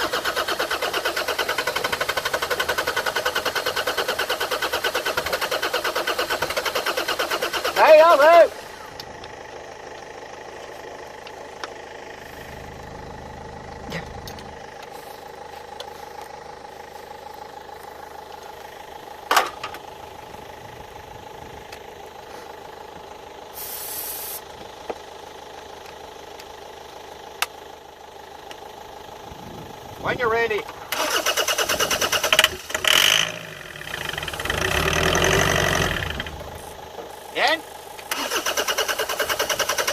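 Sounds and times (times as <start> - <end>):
diesel engine cranking without firing: 0.0 - 39.9
short hiss: 23.5 - 24.4.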